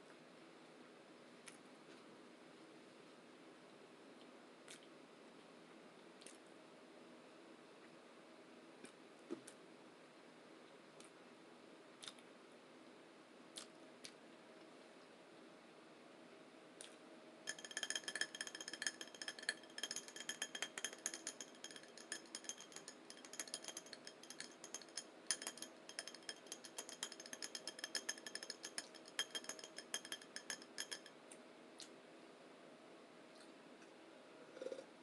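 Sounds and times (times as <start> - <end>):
metal utensil clinking on dish: 17.5 - 31.1.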